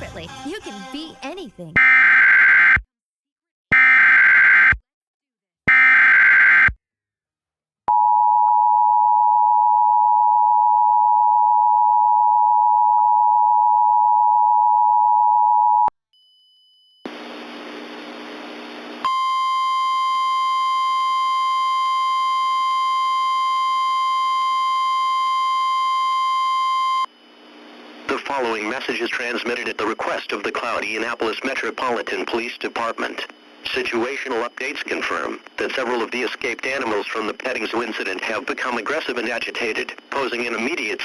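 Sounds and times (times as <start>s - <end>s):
two-tone alarm: 1.8s - 2.8s, 3.7s - 4.8s, 5.7s - 6.8s, 19.0s - 27.1s
noisy hum: 17.1s - 19.6s, 27.0s - 41.0s.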